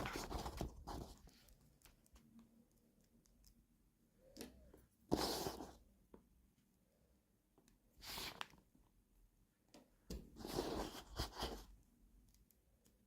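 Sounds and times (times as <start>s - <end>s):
small clicks and taps: 1.1s - 4.9s.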